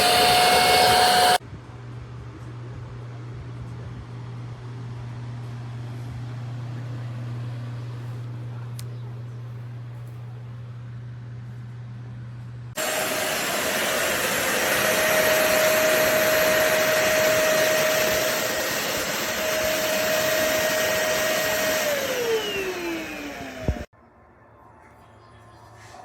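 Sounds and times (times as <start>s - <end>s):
vacuum cleaner running: 0.0s - 1.4s, 12.8s - 23.9s
vacuum motor spinning down: 0.0s - 1.4s, 12.8s - 23.9s.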